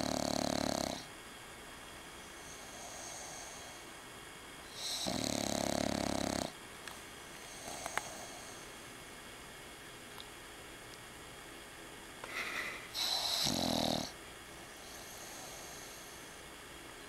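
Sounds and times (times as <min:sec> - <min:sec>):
dog snoring: 0:00.0 - 0:01.1, 0:02.2 - 0:03.9, 0:04.6 - 0:06.6, 0:07.4 - 0:08.7, 0:12.9 - 0:16.4.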